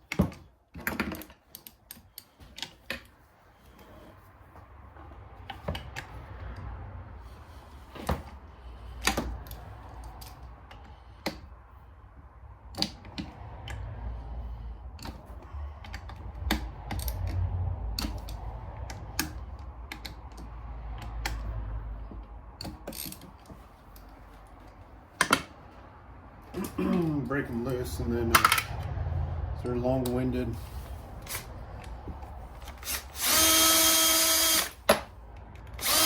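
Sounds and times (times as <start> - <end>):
low handling rumble: 25.8 - 32.7.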